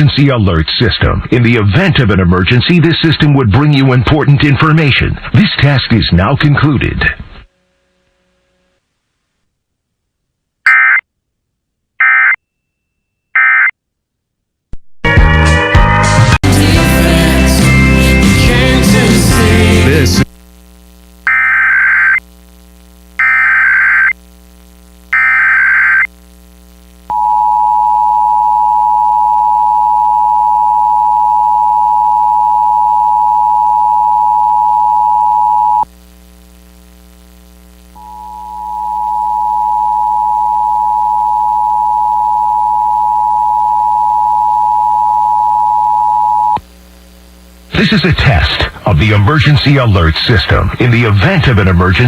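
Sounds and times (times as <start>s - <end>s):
buzzy data bursts: 20.5s - 27.0s.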